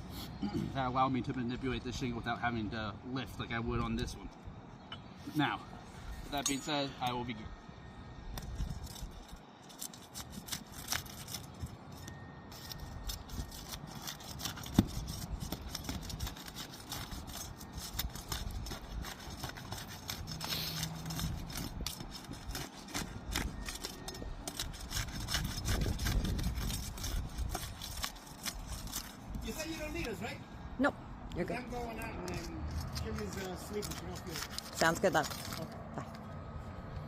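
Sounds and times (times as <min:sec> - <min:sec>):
tool scraping shingles: 0:08.4 - 0:30.3, 0:31.8 - 0:35.8.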